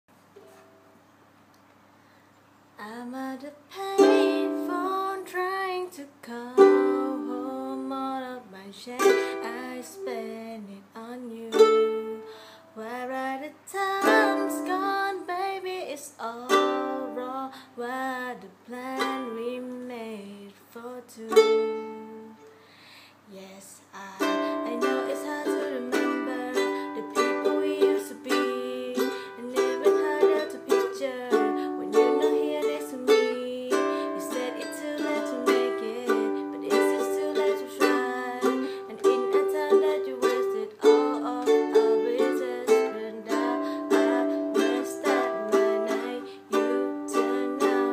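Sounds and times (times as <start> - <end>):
person singing: 2.8 - 22.5, 23.3 - 47.9
ukulele strummed chords: 3.8 - 5.6, 6.5 - 8.0, 9.0 - 10.5, 11.5 - 12.4, 14.0 - 15.3, 16.4 - 17.4, 18.9 - 19.6, 21.3 - 22.4, 24.1 - 47.9.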